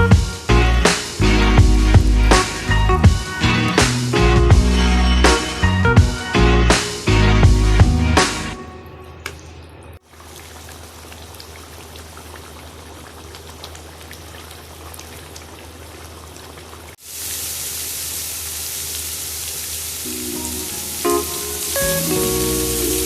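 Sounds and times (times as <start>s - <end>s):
music: 0.0s - 8.7s, 20.1s - 23.0s
food sizzling in a pan: 17.0s - 23.0s.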